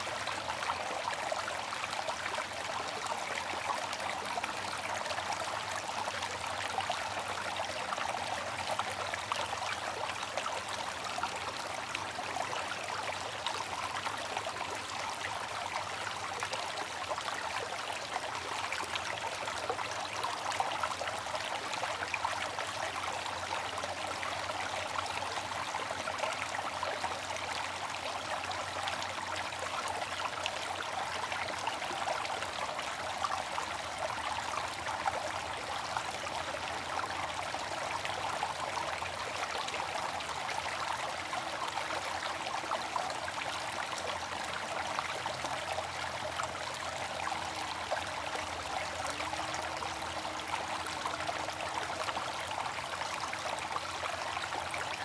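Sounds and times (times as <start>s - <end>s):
fountain water trickling and splashing: 0.0s - 55.0s.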